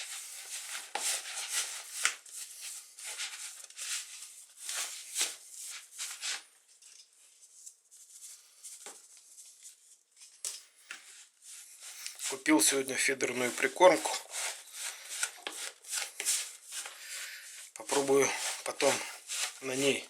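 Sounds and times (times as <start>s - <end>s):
dry mix stirred in a bowl: 11.0s - 20.0s.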